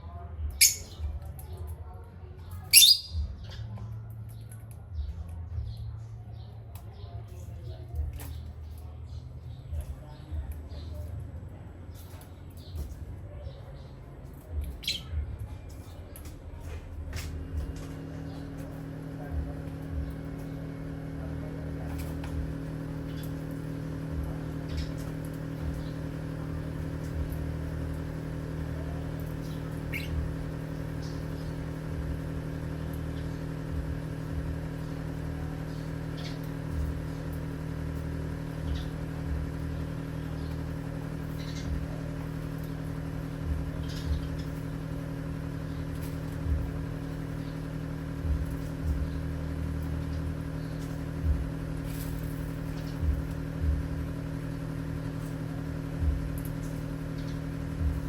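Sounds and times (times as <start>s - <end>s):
low mechanical hum: 0.0s - 58.0s
parrots chirping: 0.6s - 1.0s, 2.7s - 3.6s, 14.8s - 15.1s, 29.4s - 31.6s
soft low thumps: 19.3s - 20.4s, 43.4s - 44.4s, 46.4s - 47.0s, 48.2s - 49.4s, 51.1s - 51.9s, 52.9s - 54.2s, 56.0s - 56.6s, 57.7s - 58.0s.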